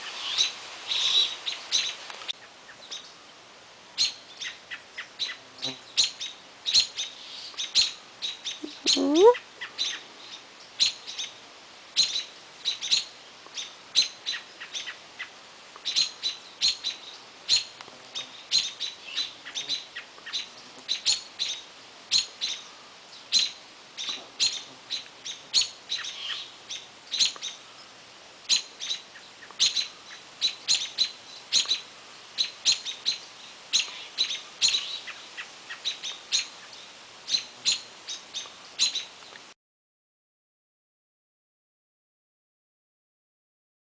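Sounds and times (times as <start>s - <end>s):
small bird chirping: 6.0s - 11.3s.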